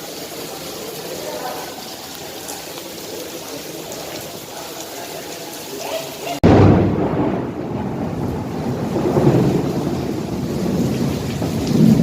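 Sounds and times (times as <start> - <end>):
rain falling: 0.0 - 12.0
thunderclap rumbling: 6.4 - 12.0.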